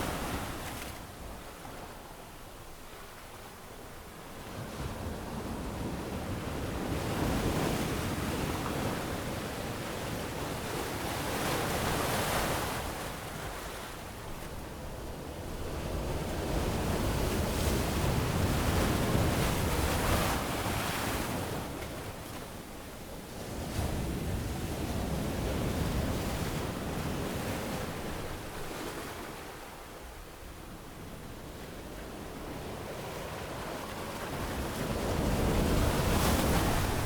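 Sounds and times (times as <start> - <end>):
ocean waves breaking on beach: 31.7 - 37.0.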